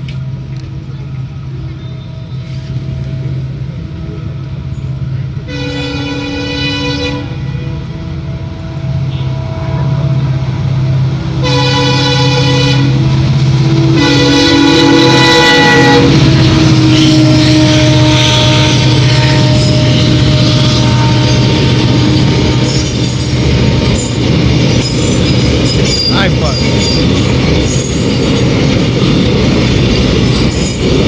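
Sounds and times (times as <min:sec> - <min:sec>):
diesel engine humming: 0:00.0 - 0:31.0
passing train rushing: 0:00.0 - 0:31.0
locomotive horn blasts: 0:05.4 - 0:08.0, 0:09.0 - 0:10.3, 0:11.4 - 0:23.0.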